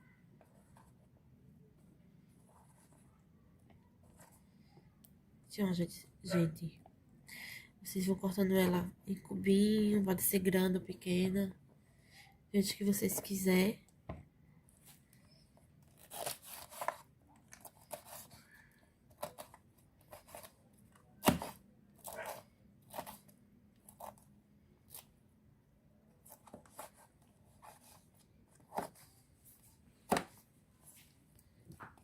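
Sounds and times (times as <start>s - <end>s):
knife slicing pineapple: 21.2s - 23.2s.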